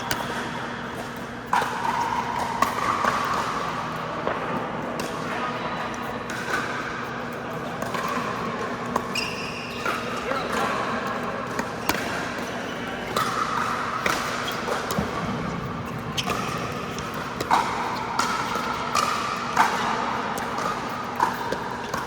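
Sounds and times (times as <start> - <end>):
paddles hitting plastic ball: 11.5 - 22.0.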